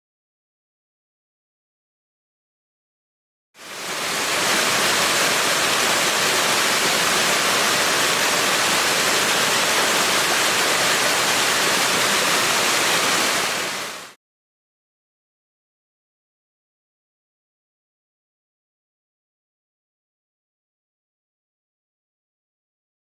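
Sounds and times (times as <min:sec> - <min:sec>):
waterfall water rushing: 0:03.6 - 0:14.2.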